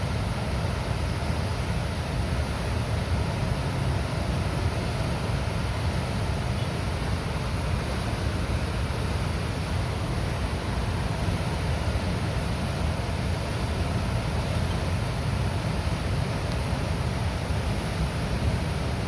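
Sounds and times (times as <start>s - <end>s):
water gushing through dam gates: 0.0s - 19.0s.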